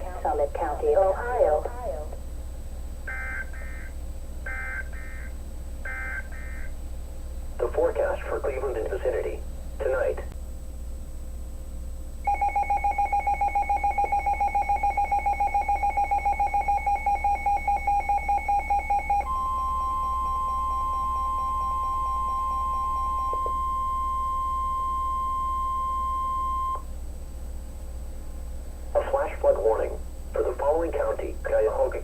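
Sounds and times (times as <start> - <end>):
rapid electronic alert beeping: 3.1 - 3.9, 4.5 - 5.3, 5.9 - 6.7
steady high alarm tone: 3.1 - 6.8, 12.2 - 26.9.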